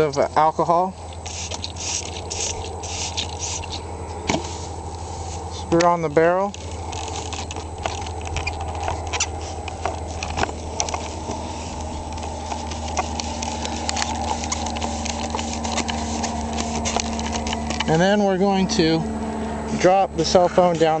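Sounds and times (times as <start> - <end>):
steady low hum: 0.0 - 21.0
threaded parts clicking and scraping: 5.6 - 18.0.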